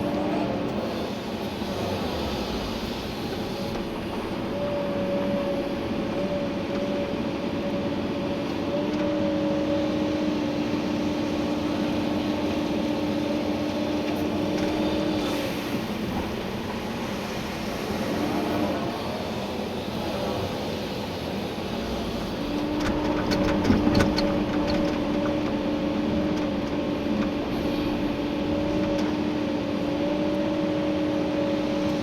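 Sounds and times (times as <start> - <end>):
excavator diesel engine running: 0.0 - 32.0.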